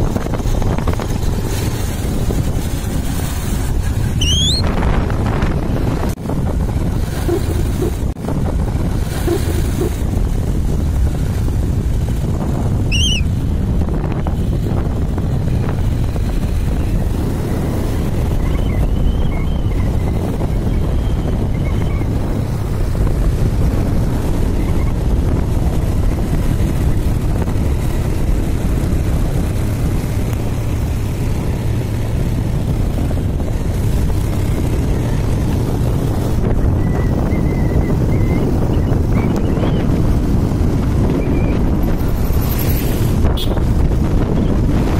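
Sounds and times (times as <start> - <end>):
vehicle rumble on road: 0.0 - 44.9
wind buffeting microphone: 0.0 - 44.9
brief high chirp: 4.2 - 4.6, 12.9 - 13.3.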